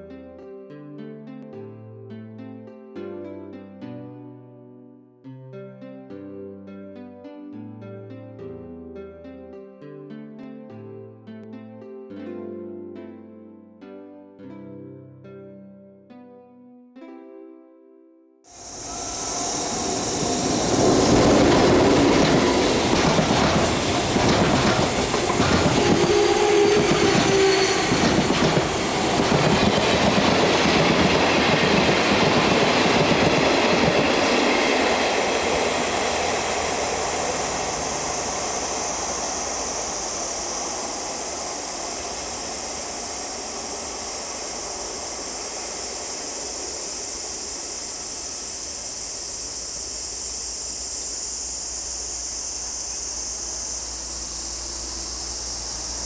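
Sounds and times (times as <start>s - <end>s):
freight train wheels clacking: 18.6s - 47.8s.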